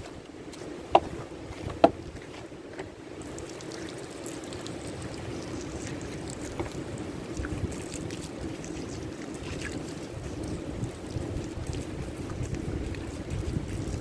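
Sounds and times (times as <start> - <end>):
moving water: 0.0 - 14.0
wind: 0.0 - 14.0
wood fire crackling: 3.0 - 14.0.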